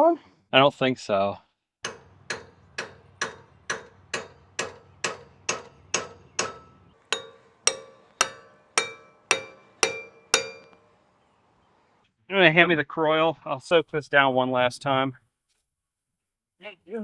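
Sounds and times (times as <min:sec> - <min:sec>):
hammer ringing on steel chisel: 0:06.4 - 0:11.0.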